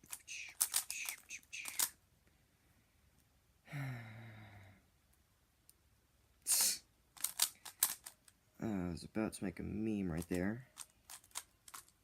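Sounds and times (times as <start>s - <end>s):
sharp clicks: 0.0s - 2.0s
person sighing: 3.6s - 4.9s, 6.5s - 6.8s
short hiss: 6.5s - 6.9s.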